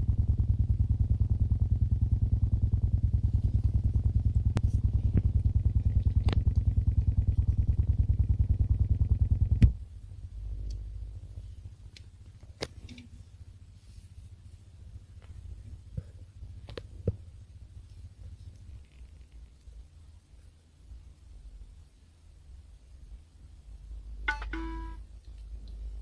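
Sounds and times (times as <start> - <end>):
rapid low clicking through speakers: 0.0 - 9.9
faint low hum: 0.0 - 26.0.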